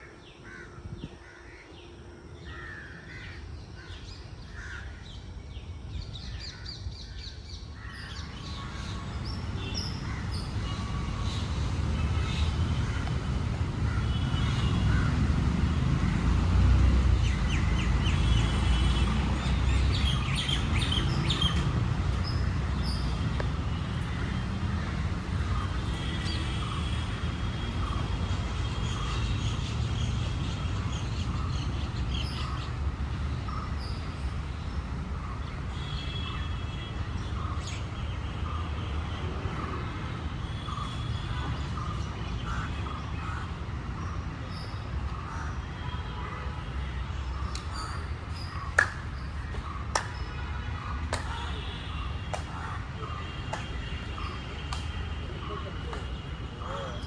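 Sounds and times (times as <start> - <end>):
birds calling and chirping: 17.2 - 38.8, 47.0 - 57.0.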